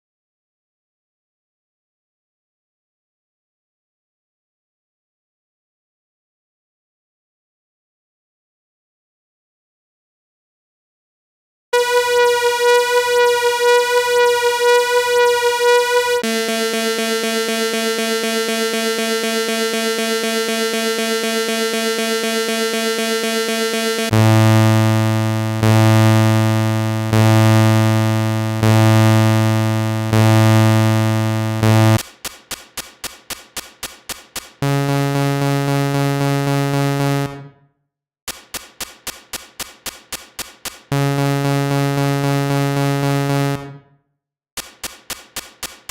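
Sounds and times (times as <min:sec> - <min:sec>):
synthesized scanner buzzing: 0:11.8 - 0:32.0.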